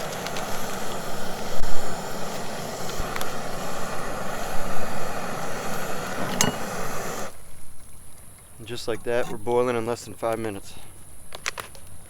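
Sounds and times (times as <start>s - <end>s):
camp stove burner hissing: 0.0s - 7.8s.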